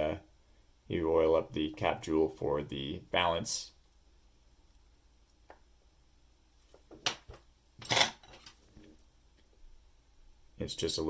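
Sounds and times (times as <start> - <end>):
tools rustling: 6.6 - 9.0.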